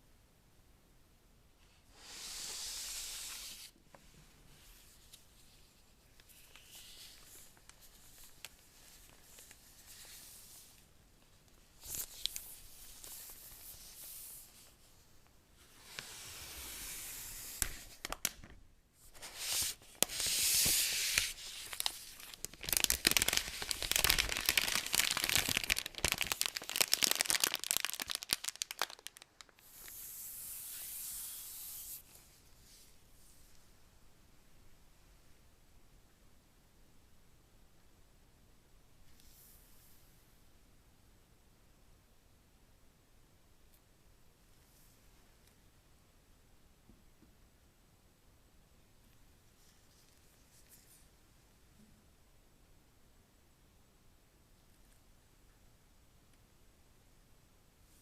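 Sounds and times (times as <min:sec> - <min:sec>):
packaging being torn and rustled: 0:21.6 - 0:29.6.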